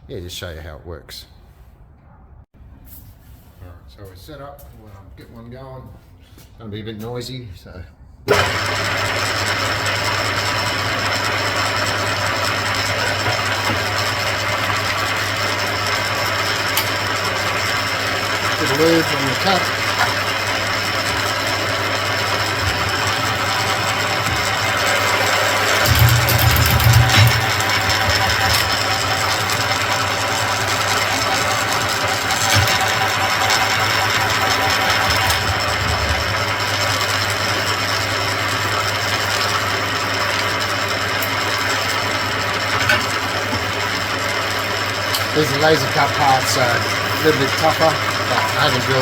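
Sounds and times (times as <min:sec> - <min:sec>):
mill drill mechanical drone: 0:08.3 - 0:49.0
deeper hum: 0:12.9 - 0:36.9.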